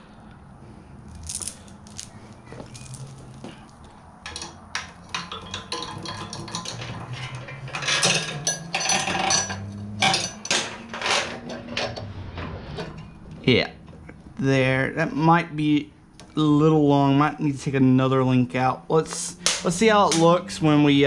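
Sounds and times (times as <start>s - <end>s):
metal chain rattling and clinking: 1.1s - 12.0s.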